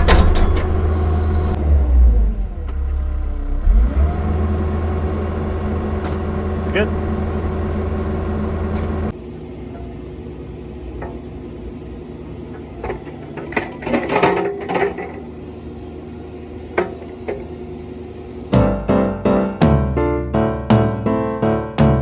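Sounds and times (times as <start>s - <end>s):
diesel engine running: 0.0s - 9.1s
piano music: 18.6s - 22.0s.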